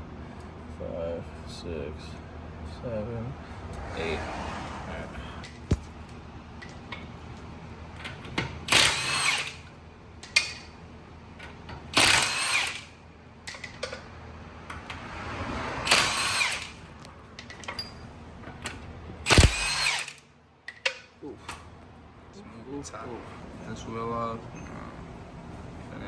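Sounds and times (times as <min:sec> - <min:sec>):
power impact wrench bursts: 0:08.7 - 0:09.7, 0:12.0 - 0:12.9, 0:15.8 - 0:17.0, 0:19.3 - 0:20.3.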